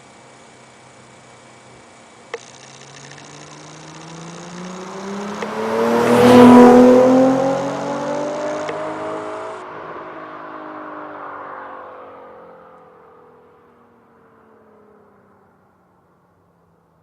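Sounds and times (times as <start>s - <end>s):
car accelerating past: 3.2s - 15.5s.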